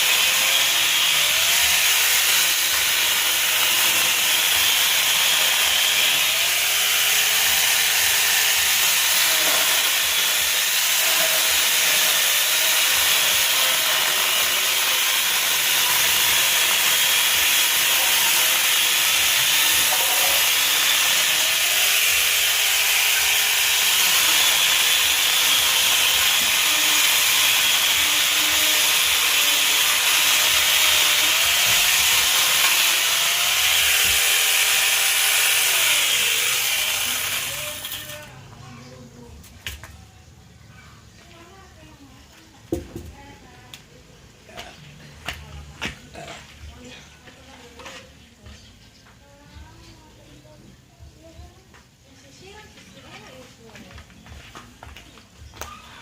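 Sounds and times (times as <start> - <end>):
electric chainsaw cutting wood: 0.0 - 38.4.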